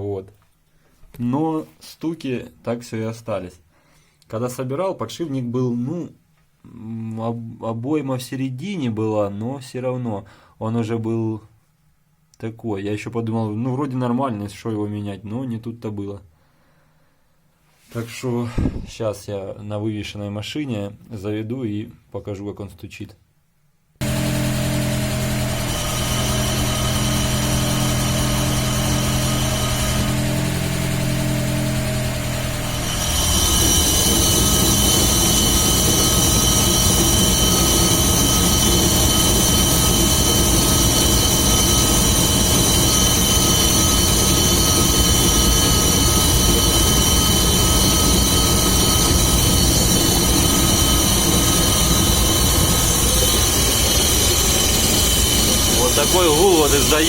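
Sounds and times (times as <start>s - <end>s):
car engine running: 24.0s - 57.0s
drivetrain hum: 24.0s - 57.0s.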